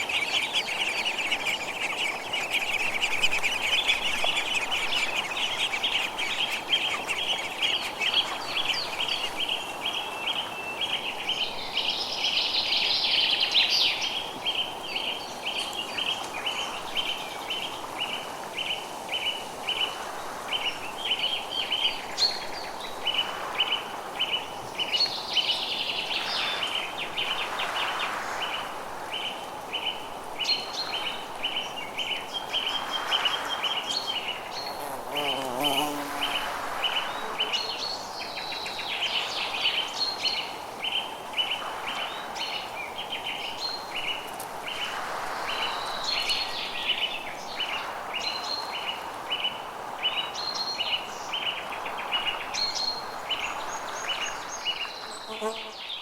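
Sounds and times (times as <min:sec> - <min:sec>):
other birds calling: 0:00.0 - 0:09.8.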